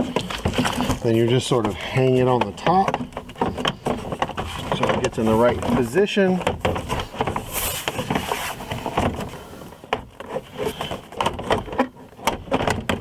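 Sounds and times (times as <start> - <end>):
plastic door panel knocking and rattling: 11.2 - 13.0.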